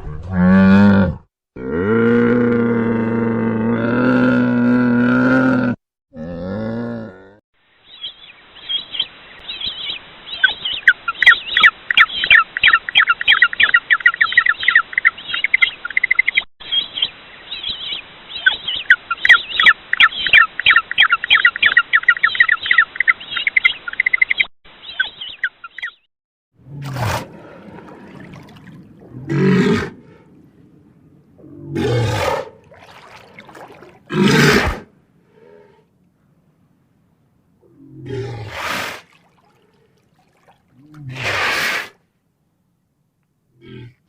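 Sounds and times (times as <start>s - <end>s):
long low animal call: 0.1s - 7.4s
birds chirping: 7.8s - 26.1s.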